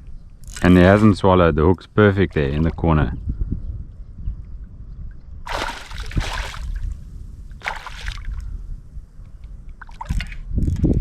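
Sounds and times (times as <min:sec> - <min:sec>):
wind rumble on microphone: 0:00.0 - 0:11.0
water splashing: 0:05.5 - 0:08.4.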